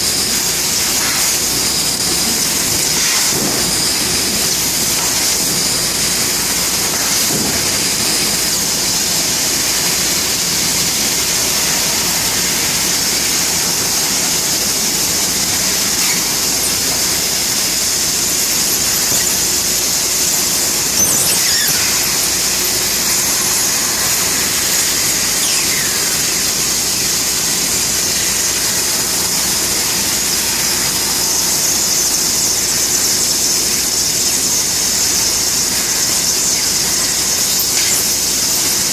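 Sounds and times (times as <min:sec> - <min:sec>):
laser cutter high hiss: 0:00.0 - 0:38.9
squeak falling in pitch: 0:18.4 - 0:23.8, 0:25.2 - 0:26.2.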